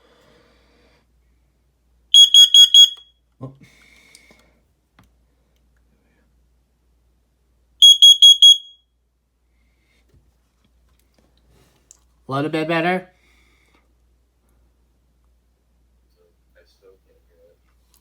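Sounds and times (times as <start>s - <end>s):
smoke alarm shrill beeps: 2.2s - 3.1s, 7.8s - 8.9s.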